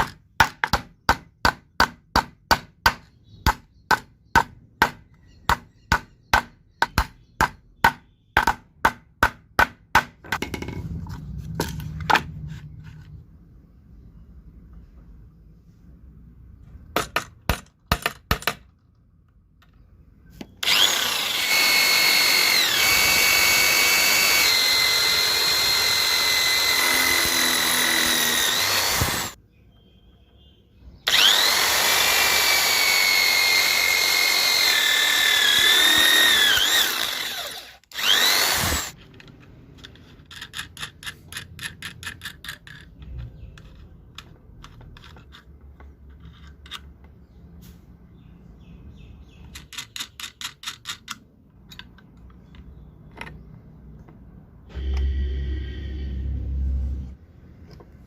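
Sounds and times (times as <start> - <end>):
electric drill whining: 20.6 - 29.4, 31.1 - 39.0, 54.7 - 57.2.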